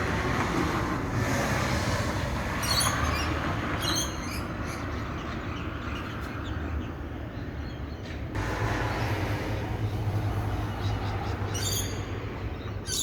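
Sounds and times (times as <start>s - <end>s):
birds chirping: 2.6s - 13.0s.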